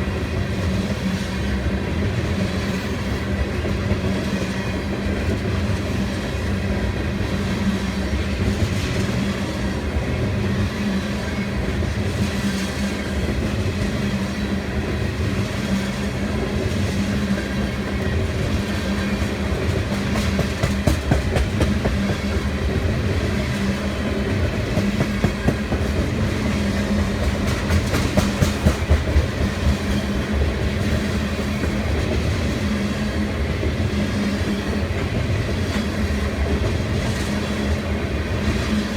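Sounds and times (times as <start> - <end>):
freight train rumbling past: 0.0 - 38.9
wheels clicking over rail joints: 24.4 - 30.5.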